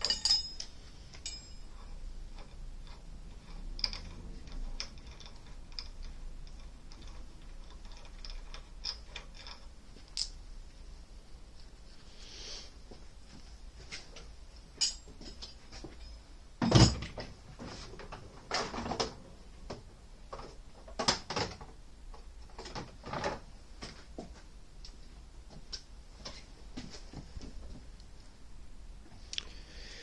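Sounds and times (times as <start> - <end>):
tools clattering on a workbench: 0.0 - 10.5, 13.3 - 24.4.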